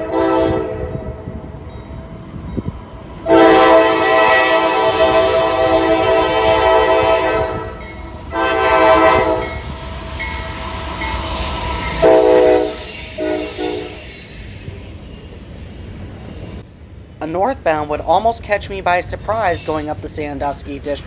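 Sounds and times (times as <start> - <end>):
locomotive air horn: 0.0 - 1.1, 3.3 - 10.8, 11.7 - 14.1
rumble of passing train: 0.0 - 21.0.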